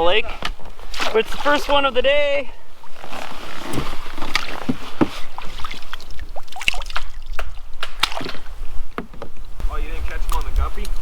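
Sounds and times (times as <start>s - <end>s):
lapping water: 5.4s - 8.4s.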